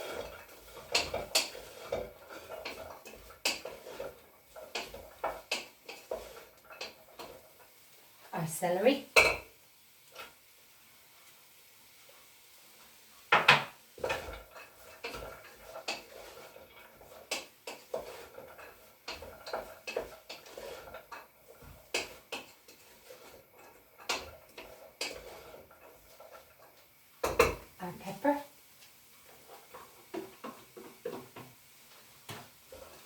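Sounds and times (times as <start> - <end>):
celery clattering into pot: 0.0 - 7.4
spoon stirring and knocking pot: 0.0 - 7.7, 9.1 - 9.5, 13.3 - 28.4, 29.3 - 31.6.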